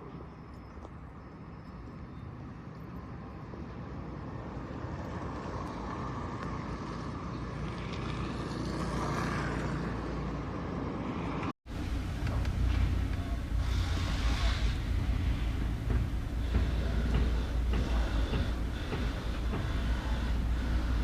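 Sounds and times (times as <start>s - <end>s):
engine humming: 11.7s - 21.0s.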